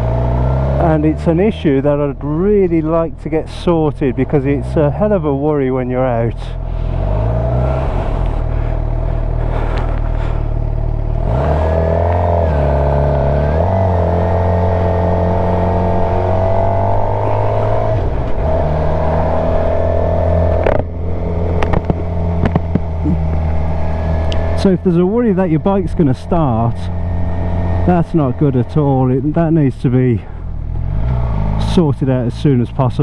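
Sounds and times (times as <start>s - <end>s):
motorcycle engine running: 0.0s - 33.0s
sharp knocks: 21.6s - 23.1s.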